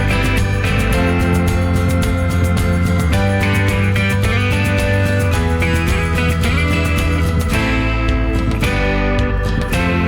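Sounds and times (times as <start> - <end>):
guitar music over steady beat: 0.0 - 10.0.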